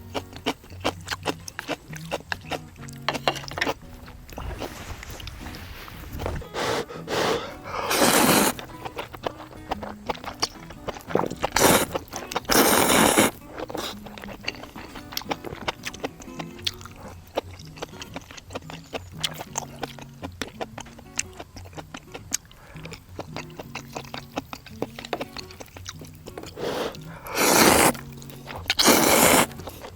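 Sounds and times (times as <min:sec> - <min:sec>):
chewing with small clicks: 0:00.0 - 0:04.7, 0:08.5 - 0:29.9
slurping noodles: 0:03.1 - 0:09.4, 0:10.9 - 0:14.1, 0:26.4 - 0:28.0, 0:28.6 - 0:29.8.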